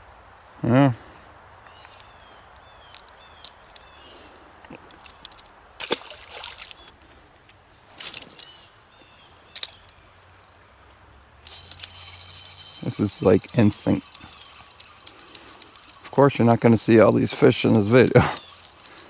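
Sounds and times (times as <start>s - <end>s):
creek water trickling: 1.4s - 19.0s
water splashing: 5.7s - 7.0s, 11.4s - 19.0s
fishing reel ratcheting whir: 8.0s - 19.0s.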